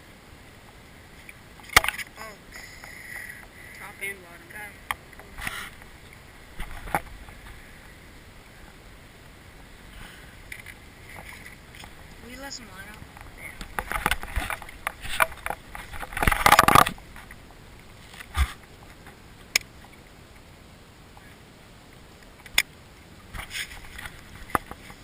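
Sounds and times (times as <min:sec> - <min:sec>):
fishing gear rustling and knocking: 0:05.0 - 0:07.6, 0:13.0 - 0:19.2, 0:23.4 - 0:25.0.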